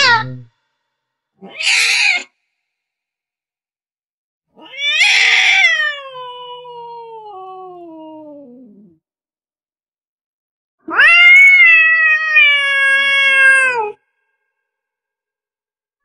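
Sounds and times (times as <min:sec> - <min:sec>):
cat meowing angrily: 0:00.0 - 0:00.5, 0:01.4 - 0:02.3, 0:04.6 - 0:07.0, 0:10.8 - 0:14.0.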